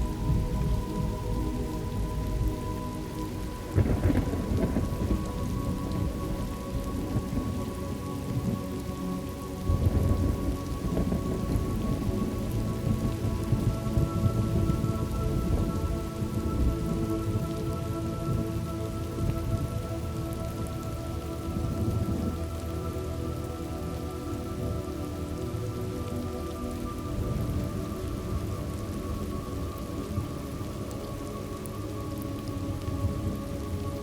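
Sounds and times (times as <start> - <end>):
soft held music tones: 0.0 - 34.0
steady rain: 0.0 - 34.0
rolling thunder: 3.5 - 7.7, 9.6 - 17.8.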